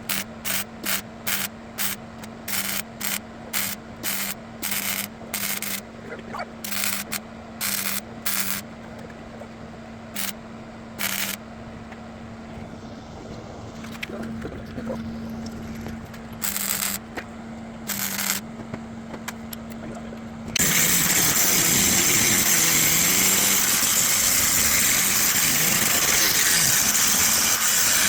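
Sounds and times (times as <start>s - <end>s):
welding bursts: 0.0s - 8.7s, 10.2s - 10.4s, 11.0s - 11.4s, 12.5s - 17.2s, 17.8s - 18.4s, 20.6s - 28.0s
welder hum: 0.0s - 9.4s, 10.0s - 18.5s, 19.2s - 28.0s.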